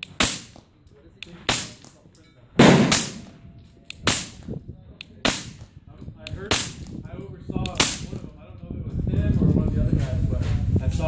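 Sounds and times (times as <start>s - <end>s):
suppressed pistol shots: 0.0s - 0.6s, 1.2s - 1.9s, 2.6s - 5.7s, 6.3s - 6.9s, 7.7s - 8.2s.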